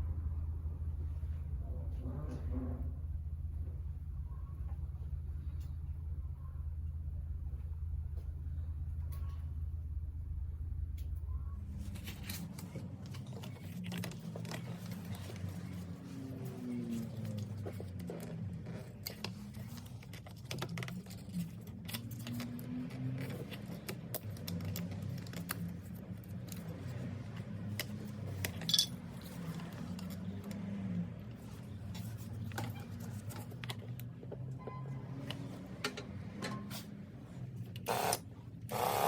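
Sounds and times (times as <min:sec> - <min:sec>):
low steady hum: 0:00.0 - 0:39.0
metal parts clinking: 0:28.4 - 0:29.4.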